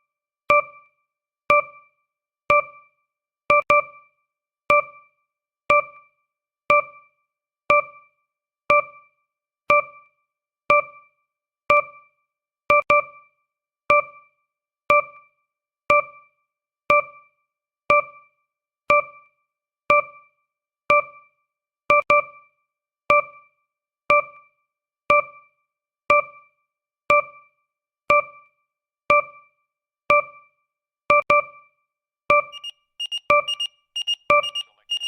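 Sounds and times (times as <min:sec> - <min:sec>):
countdown timer ticking: 0:32.4 - 0:35.0
rapid high alarm beeping: 0:32.5 - 0:35.0.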